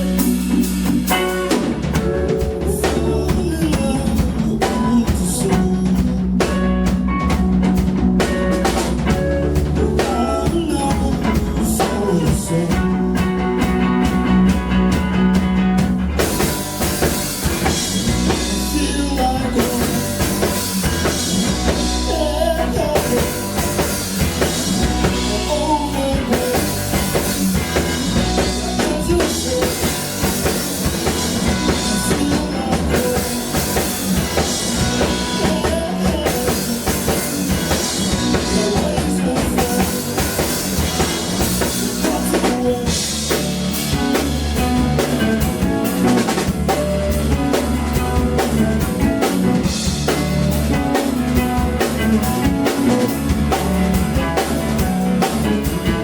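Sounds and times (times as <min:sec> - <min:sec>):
drum kit: 0:00.0 - 0:56.0
live band playing: 0:00.0 - 0:56.0.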